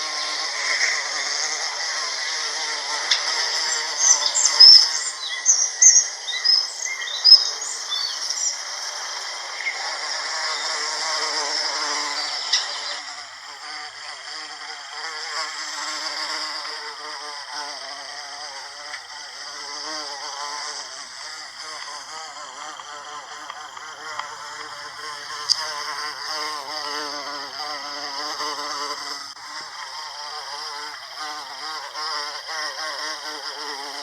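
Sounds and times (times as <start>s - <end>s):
bumblebee buzzing: 0.0s - 34.0s
high bird chirps: 3.7s - 8.6s.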